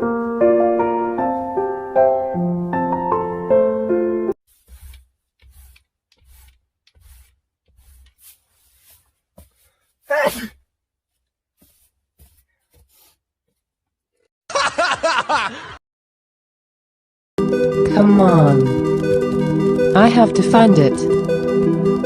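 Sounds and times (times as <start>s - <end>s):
man sneezing: 10.1s - 10.6s.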